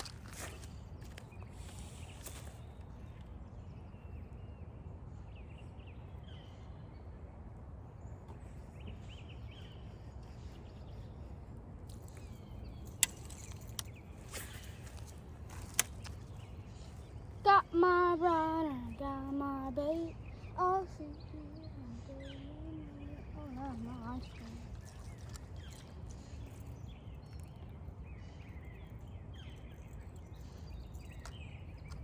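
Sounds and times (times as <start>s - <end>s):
faint bird chirps: 0.0s - 32.0s
sharp clicks: 11.9s - 16.5s.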